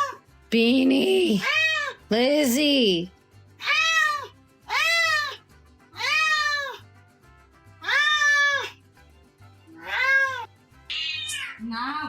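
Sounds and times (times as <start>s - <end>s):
cat meowing: 0.0s - 0.2s, 1.4s - 2.0s, 3.6s - 5.4s, 6.0s - 6.8s, 7.8s - 8.8s, 9.8s - 11.6s.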